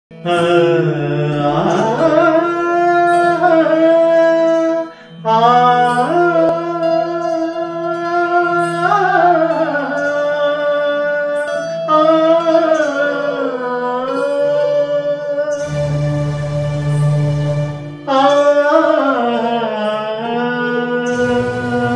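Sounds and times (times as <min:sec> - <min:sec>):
man singing wordless notes: 0:00.1 - 0:17.0, 0:17.9 - 0:21.9
steady low drone: 0:15.6 - 0:18.2, 0:21.1 - 0:21.9.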